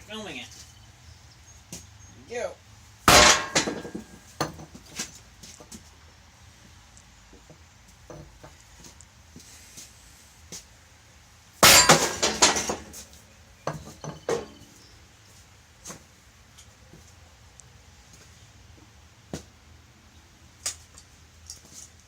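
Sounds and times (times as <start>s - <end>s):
hammer striking metal shaft: 3.1s - 4.1s, 11.6s - 12.6s.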